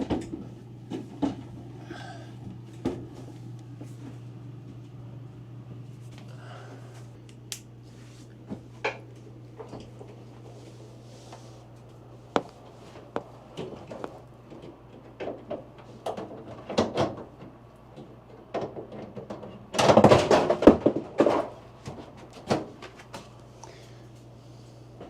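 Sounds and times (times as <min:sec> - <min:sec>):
low steady hum: 0:00.0 - 0:25.0
knocks and rattles of parts: 0:13.6 - 0:23.3.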